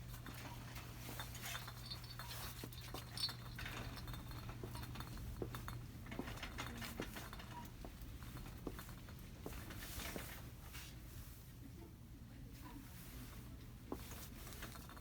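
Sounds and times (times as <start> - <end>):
clicks and clinks of goods: 0.1 - 10.3.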